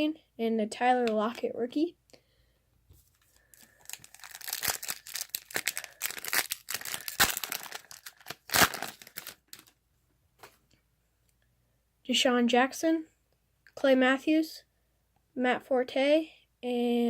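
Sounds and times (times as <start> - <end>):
foil wrapper tearing and crinkling: 3.5 - 9.7.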